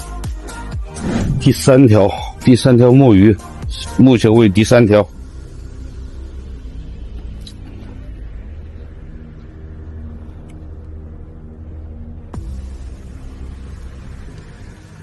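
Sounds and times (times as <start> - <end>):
boat engine rumbling: 5.1 - 14.6.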